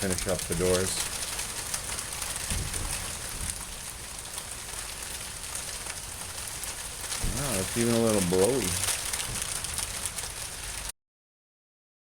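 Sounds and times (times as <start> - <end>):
steady rain patter: 0.0 - 10.9
wind rumble: 5.3 - 10.8.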